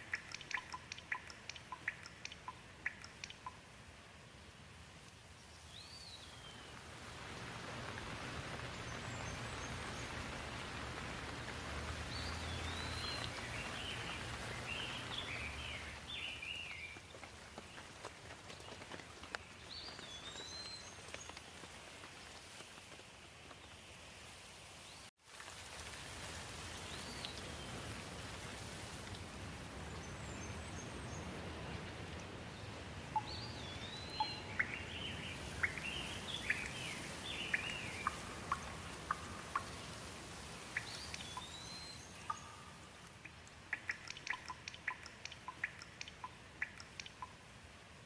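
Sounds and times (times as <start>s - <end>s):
sharp drips: 0.0s - 3.7s, 7.8s - 17.2s, 33.1s - 47.7s
rain falling: 4.7s - 24.4s, 25.2s - 48.0s
birds chirping: 7.6s - 17.9s, 29.8s - 47.4s.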